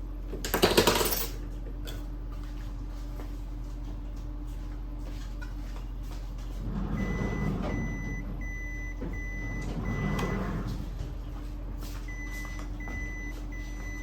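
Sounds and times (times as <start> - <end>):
printer mechanism whirring: 6.5 - 11.4
printer beeping: 6.6 - 11.4, 12.0 - 14.0.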